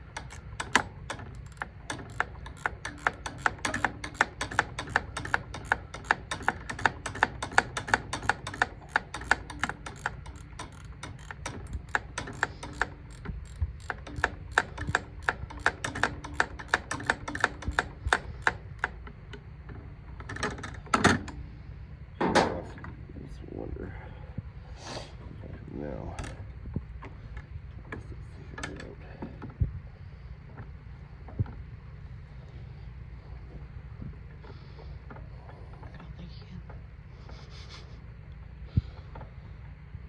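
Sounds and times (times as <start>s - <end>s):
metal knocks: 0.0s - 18.9s
ratchet wrench clicking: 0.0s - 19.0s.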